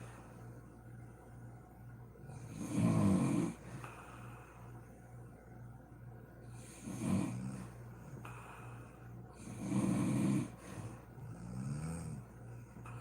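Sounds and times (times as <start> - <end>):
woman snoring: 2.4 - 3.6, 6.8 - 7.8, 9.4 - 12.3.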